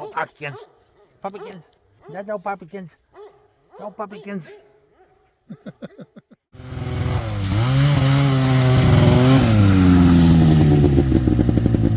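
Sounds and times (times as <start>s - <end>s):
snowmobile engine revving: 6.6s - 11.9s.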